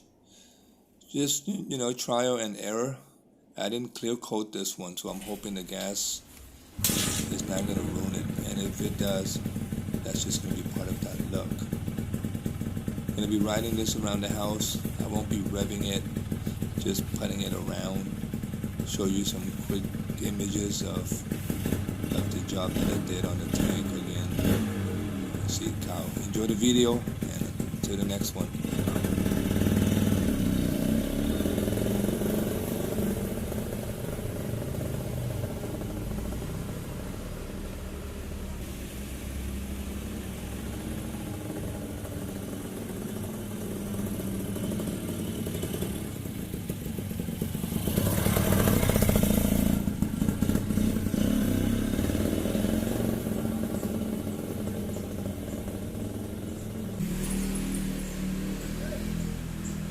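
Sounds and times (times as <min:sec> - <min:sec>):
two-stroke motorcycle engine: 0:06.8 - 0:59.9.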